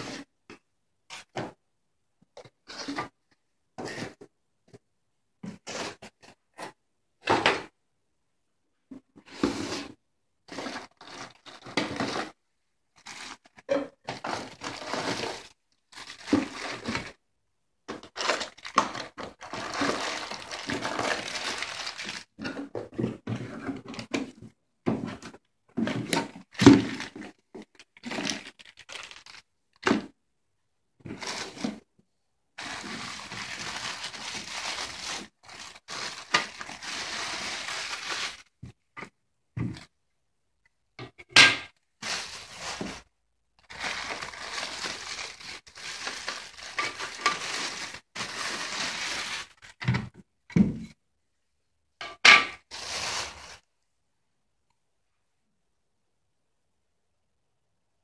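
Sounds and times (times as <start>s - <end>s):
packaging rustling and tearing: 13.0s - 17.2s, 18.0s - 22.4s, 26.5s - 29.5s, 31.2s - 31.8s, 32.6s - 38.5s, 42.0s - 49.8s, 52.7s - 53.6s.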